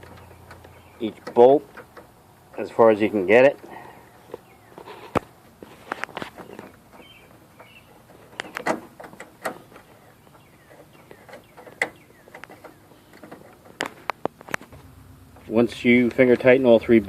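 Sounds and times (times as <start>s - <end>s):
faint bird chirps: 0.0s - 1.2s, 3.7s - 5.1s, 6.4s - 8.6s, 9.6s - 13.5s
sharp metallic clicks and taps: 5.9s - 14.8s.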